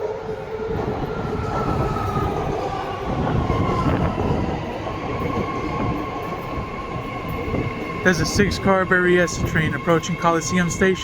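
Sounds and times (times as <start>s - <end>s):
high train whine: 0.0s - 11.0s
train wheels rumbling on rail: 0.0s - 11.0s.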